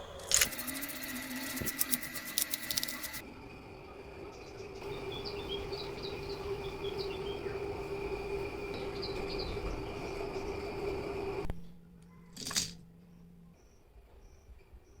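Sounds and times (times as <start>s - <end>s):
steady low hum: 0.0s - 14.8s
sharp clicks and rattles: 0.2s - 3.2s
birds chirping: 4.3s - 10.8s.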